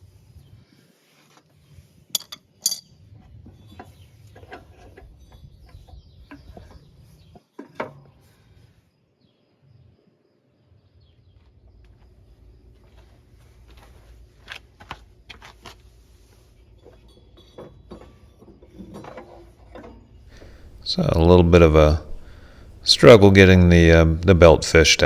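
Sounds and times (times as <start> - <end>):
metal tools clinking and knocking: 2.1 - 3.0, 16.8 - 21.2.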